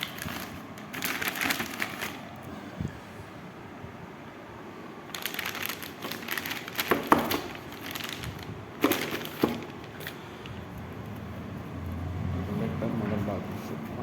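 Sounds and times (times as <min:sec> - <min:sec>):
packaging crinkling: 0:00.0 - 0:02.4, 0:05.1 - 0:11.1.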